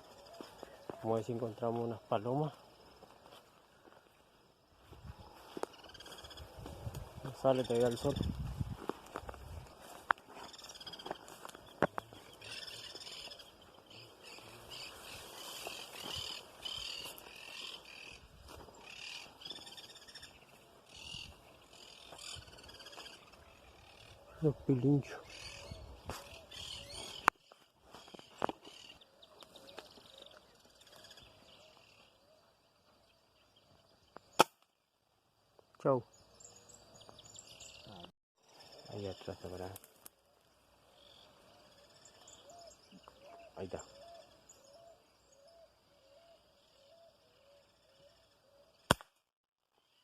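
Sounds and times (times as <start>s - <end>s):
cuckoos calling faintly: 0.0s - 4.0s, 4.8s - 8.6s, 9.2s - 34.4s, 35.8s - 49.0s
birds singing and chirping: 0.0s - 4.1s, 4.8s - 34.5s, 35.8s - 39.8s, 40.4s - 48.9s
sharp snaps: 34.2s - 34.7s, 48.9s - 49.2s.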